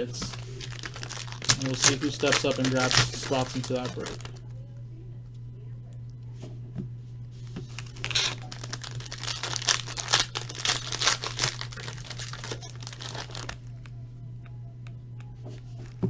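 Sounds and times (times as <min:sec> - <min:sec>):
plastic wrapping crinkling and tearing: 0:00.0 - 0:04.4, 0:07.7 - 0:13.8.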